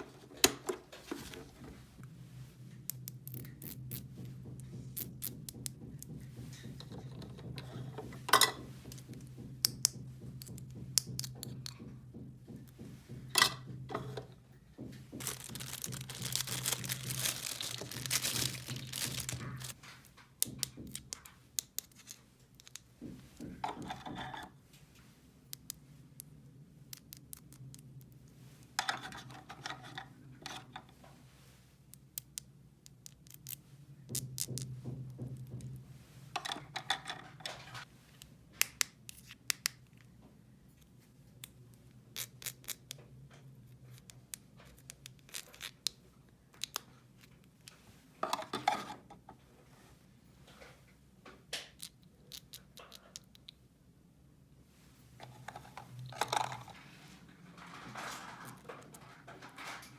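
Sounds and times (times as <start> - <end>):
packaging crinkling: 15.2 - 19.8.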